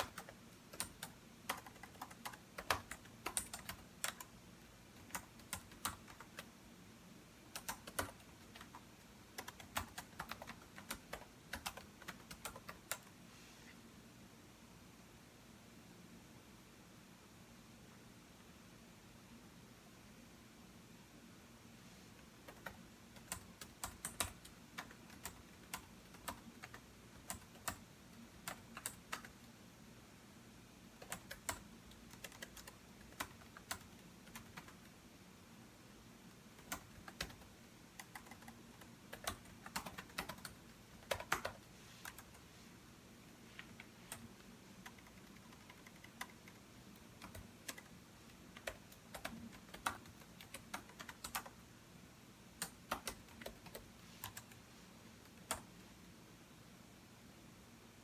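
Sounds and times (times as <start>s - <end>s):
computer keyboard typing: 0.0s - 4.4s, 5.0s - 6.5s, 7.5s - 13.1s, 22.4s - 29.5s, 31.0s - 34.9s, 36.5s - 42.4s, 43.6s - 51.6s, 52.6s - 54.6s, 55.2s - 55.7s
faint low hum: 0.0s - 58.0s.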